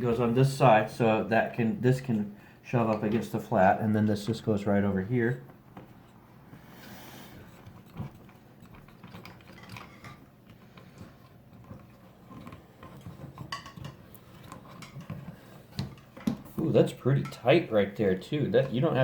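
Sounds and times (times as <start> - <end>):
metal parts clicking and rattling: 7.5 - 19.0.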